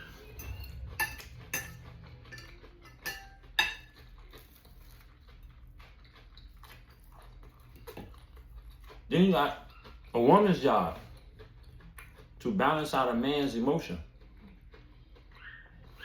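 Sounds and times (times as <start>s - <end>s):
cutlery clinking on a plate: 0.2s - 4.0s
cutlery scraping and tapping: 0.2s - 4.0s.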